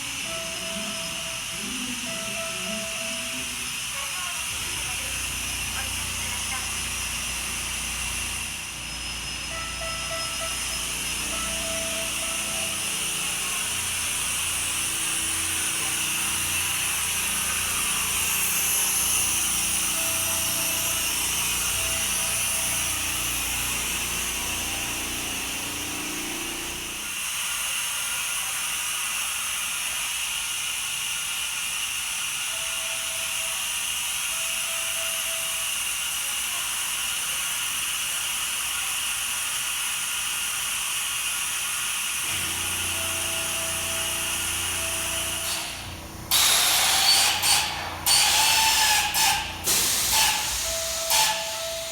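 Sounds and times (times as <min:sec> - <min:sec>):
compressed air hissing: 0:00.0 - 0:27.4, 0:39.5 - 0:51.9.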